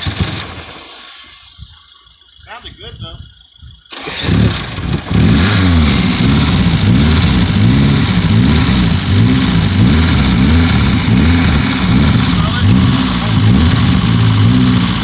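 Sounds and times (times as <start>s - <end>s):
car engine revving: 3.9s - 15.0s.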